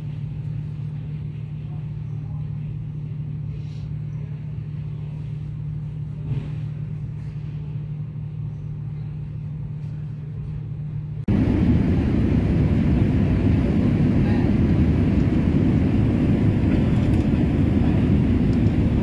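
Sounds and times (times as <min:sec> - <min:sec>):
low vehicle drone: 0:00.0 - 0:19.0
loud rushing noise: 0:11.3 - 0:19.0.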